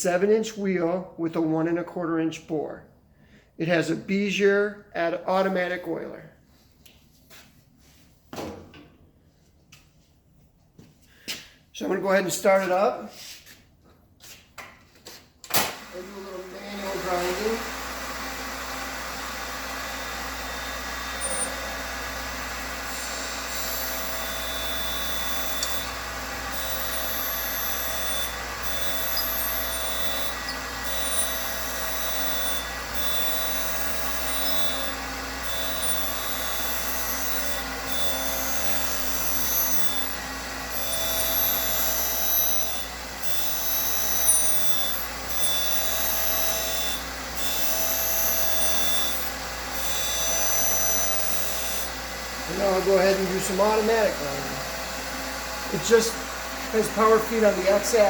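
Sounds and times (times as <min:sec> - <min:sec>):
grinder motor hum: 0:15.8 - 0:58.0
high grinding hiss: 0:19.2 - 0:40.2.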